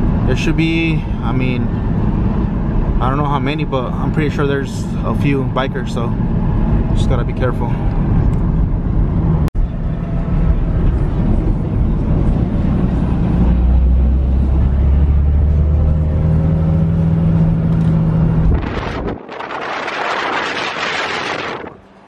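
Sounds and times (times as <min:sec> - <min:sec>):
car engine droning: 0:00.0 - 0:22.0
wind rushing over microphone: 0:17.2 - 0:22.0.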